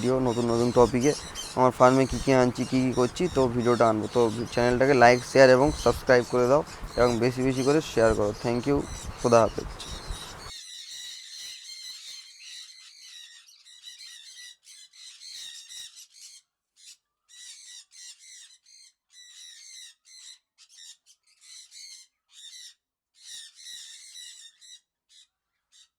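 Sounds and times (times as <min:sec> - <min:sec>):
small birds chattering and squawking: 0:00.0 - 0:10.5.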